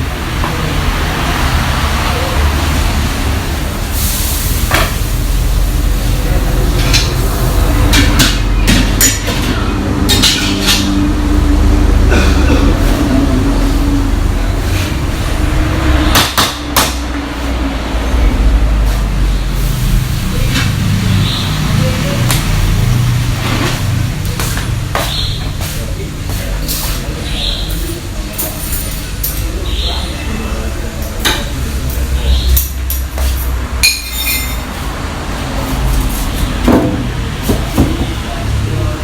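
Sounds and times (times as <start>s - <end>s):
steady low rumble: 2.5s - 9.0s.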